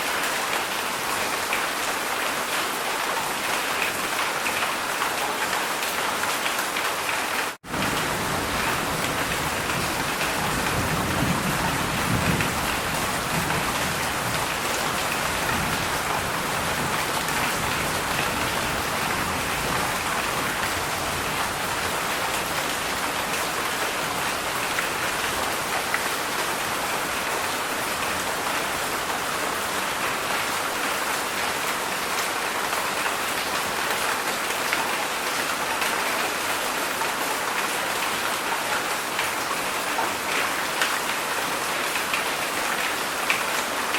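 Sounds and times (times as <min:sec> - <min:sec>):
heavy rain falling: 0:00.0 - 0:43.9.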